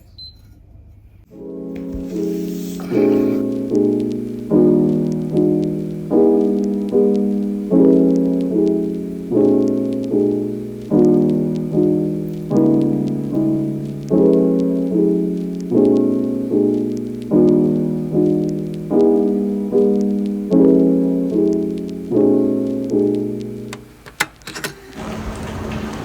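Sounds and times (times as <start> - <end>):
soft piano chords: 1.3 - 24.0
sharp clicks and light knocks: 22.8 - 26.0.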